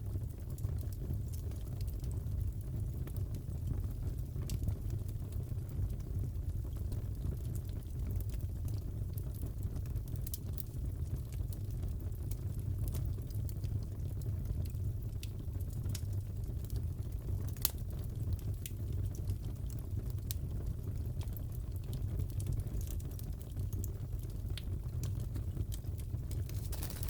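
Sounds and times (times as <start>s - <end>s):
pops and snaps of fire: 17.4s - 18.0s, 24.6s - 27.0s
fire crackling: 25.0s - 27.0s.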